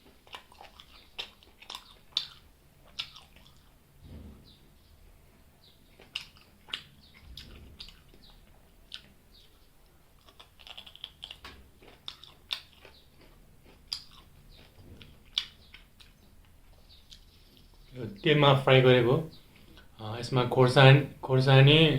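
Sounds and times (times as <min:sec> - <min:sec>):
close-miked chewing: 0:00.0 - 0:18.2, 0:19.3 - 0:20.0
wet mouth smacks and clicks: 0:00.3 - 0:03.7.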